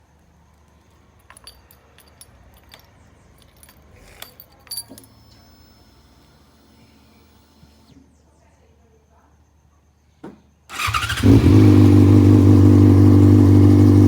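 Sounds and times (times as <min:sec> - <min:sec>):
keys jangling: 0:00.8 - 0:05.4
faint steady whine: 0:02.8 - 0:09.8.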